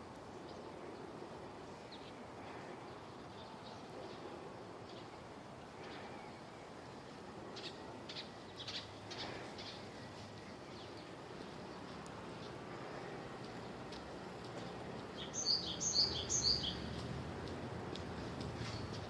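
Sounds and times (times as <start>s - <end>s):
steady outdoor hiss: 0.0s - 19.0s
birds chirping: 7.5s - 17.6s.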